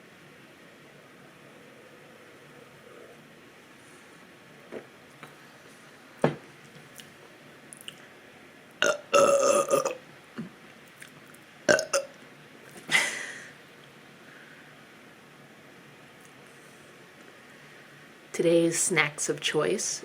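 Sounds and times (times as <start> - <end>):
person burping: 8.8 - 10.0, 11.7 - 12.2.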